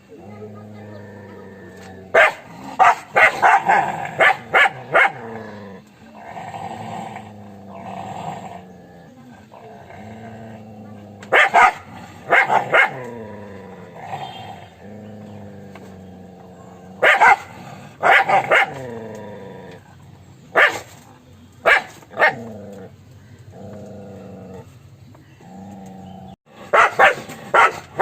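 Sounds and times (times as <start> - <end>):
dog growling: 0.0 - 20.4, 22.1 - 28.0
dog barking: 2.1 - 5.3, 11.3 - 13.1, 17.0 - 18.8, 20.5 - 20.9, 21.6 - 22.5, 26.6 - 28.0.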